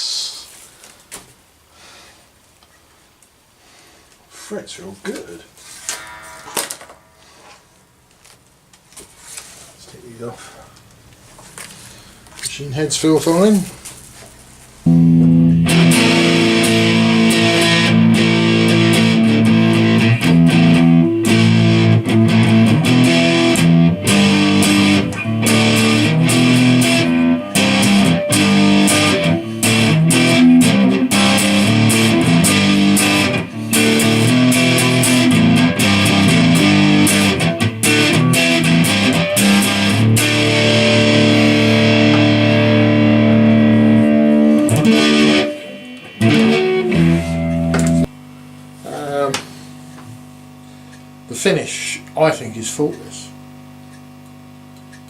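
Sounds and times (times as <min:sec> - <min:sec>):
distorted electric guitar strumming: 0:05.7 - 0:08.2, 0:14.8 - 0:49.4.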